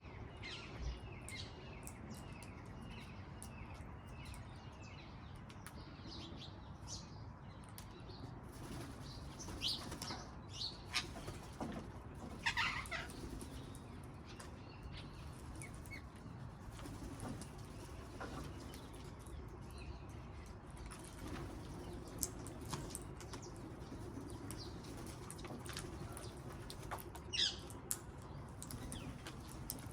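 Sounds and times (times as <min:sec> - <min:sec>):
parrots calling: 0:12.4 - 0:13.2.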